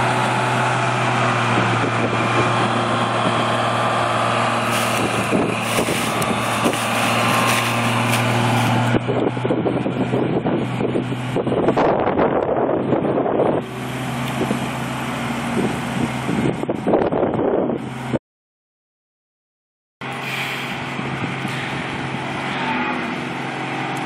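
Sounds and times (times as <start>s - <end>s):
farm machinery engine running: 0.0s - 18.2s, 20.0s - 24.0s
wind noise on microphone: 1.4s - 3.6s, 4.6s - 18.2s, 20.7s - 22.4s.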